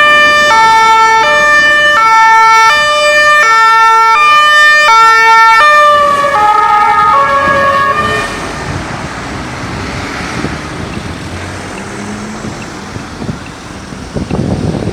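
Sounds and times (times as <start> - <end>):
two-tone emergency siren: 0.0 - 8.9
road and wind noise: 0.0 - 14.9.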